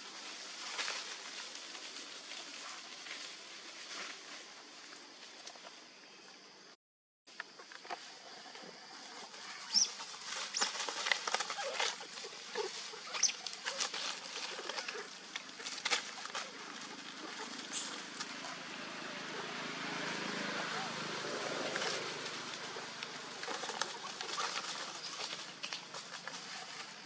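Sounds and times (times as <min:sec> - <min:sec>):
monkeys moving about rustling: 0:00.0 - 0:05.8, 0:08.5 - 0:27.0
monkey squeaks: 0:12.6 - 0:13.6.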